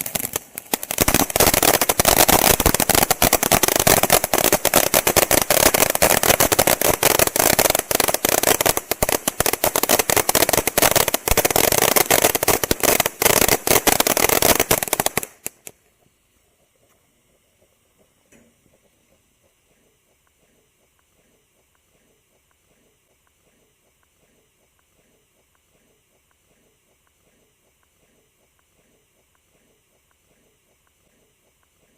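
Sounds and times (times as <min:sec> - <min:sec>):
fountain firework crackling: 0:00.0 - 0:15.8.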